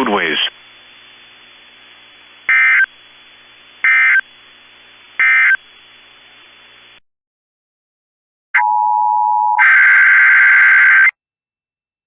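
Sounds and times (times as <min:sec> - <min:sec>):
faint radio hiss: 0:00.0 - 0:07.0
digital data bursts: 0:09.6 - 0:11.1.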